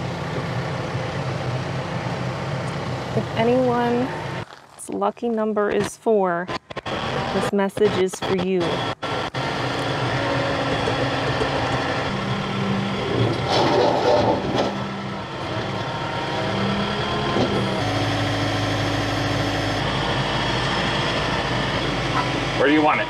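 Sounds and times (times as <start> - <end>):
heavy machine engine running: 0.0 - 4.5, 5.6 - 23.0.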